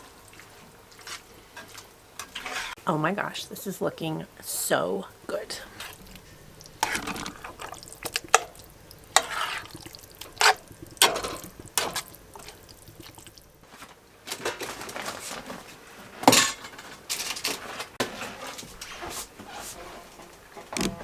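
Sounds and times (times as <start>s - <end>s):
spoon scraping thick filling: 5.6s - 13.5s
spoon clacking against pot: 5.7s - 13.5s.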